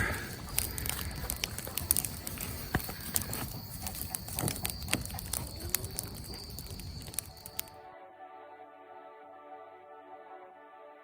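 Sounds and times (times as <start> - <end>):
brush fire crackling: 0.0 - 7.8.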